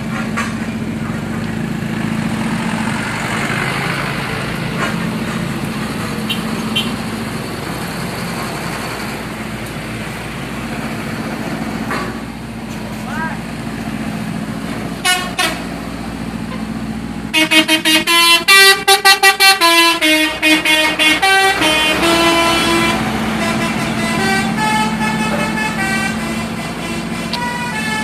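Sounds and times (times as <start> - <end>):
low engine hum: 0.0 - 18.3, 19.4 - 28.0
multi-tone bus horn tune: 6.2 - 7.1, 15.0 - 15.7, 17.3 - 28.0.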